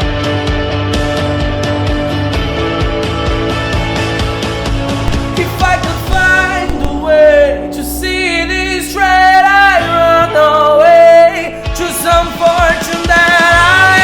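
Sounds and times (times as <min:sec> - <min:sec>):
live rock band: 0:00.0 - 0:08.6, 0:10.3 - 0:14.0
singer holding wavering wordless notes: 0:05.1 - 0:14.0.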